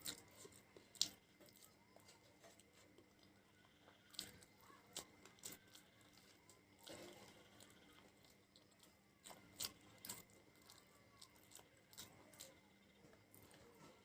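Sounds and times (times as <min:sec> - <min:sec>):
person chewing: 0:00.0 - 0:14.0.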